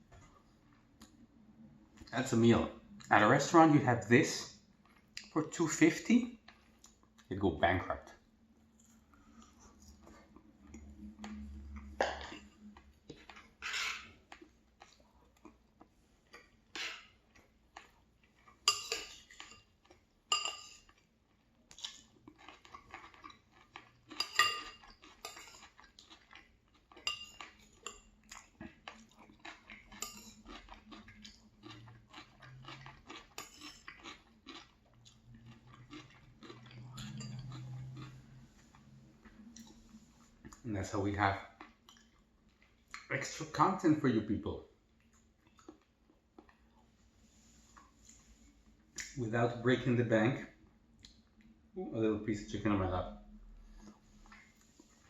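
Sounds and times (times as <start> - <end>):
cutlery clinking on a plate: 18.7 - 19.7, 20.3 - 20.9, 24.2 - 25.6.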